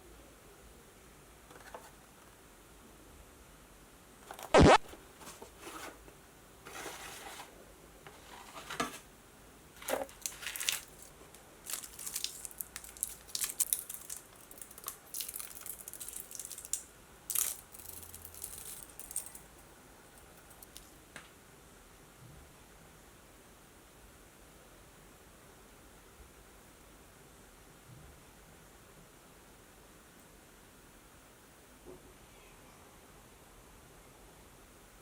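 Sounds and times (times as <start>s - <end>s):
packaging crinkling and tearing: 9.8s - 19.4s.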